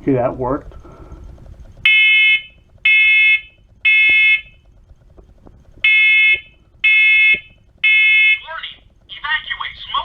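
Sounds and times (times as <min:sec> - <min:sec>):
smoke alarm high-pitched beeps: 0:00.8 - 0:04.8, 0:05.8 - 0:09.2.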